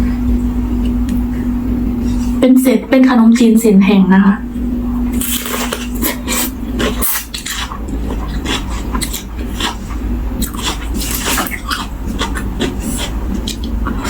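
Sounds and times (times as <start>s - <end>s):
person chewing wetly: 5.1s - 14.0s.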